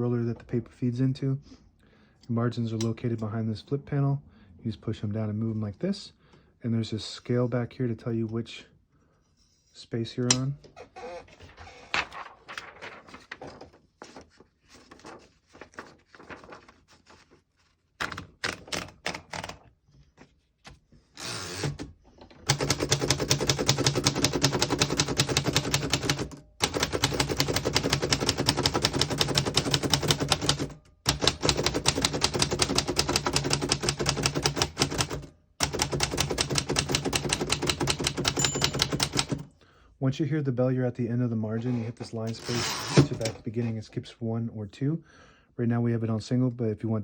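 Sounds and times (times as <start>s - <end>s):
typewriter typing: 18.0s - 19.6s, 21.2s - 39.5s.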